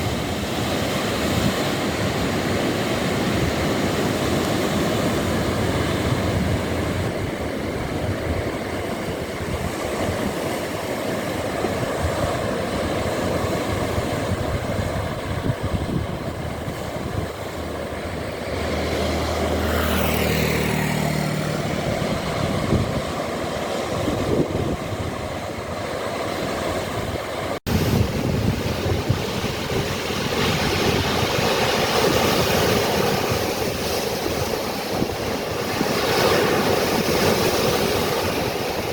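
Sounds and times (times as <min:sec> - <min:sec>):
ocean surf: 0:00.0 - 0:38.9
passing engine hum: 0:02.7 - 0:38.9.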